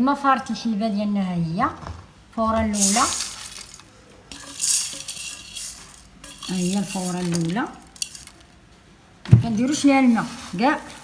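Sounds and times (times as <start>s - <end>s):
person speaking: 0.4s - 3.8s, 4.5s - 8.4s, 9.3s - 11.0s
utensil scraping seeds in a pot: 2.4s - 8.6s, 9.6s - 11.0s.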